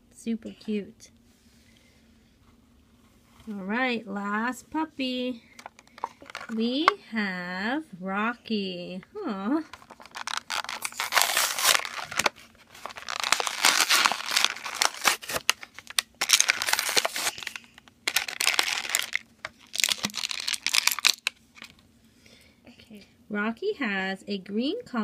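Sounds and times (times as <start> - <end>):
toy packaging crinkling and tearing: 5.6 - 6.6, 9.7 - 21.8.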